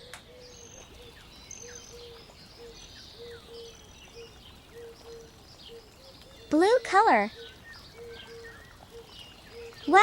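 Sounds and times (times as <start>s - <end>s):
birds chirping: 0.0s - 10.0s.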